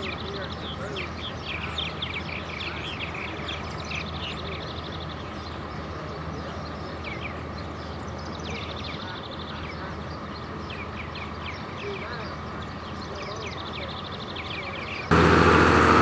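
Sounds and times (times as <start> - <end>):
birds chirping and trilling: 0.0 - 15.1
farm machine engine humming: 15.1 - 16.0.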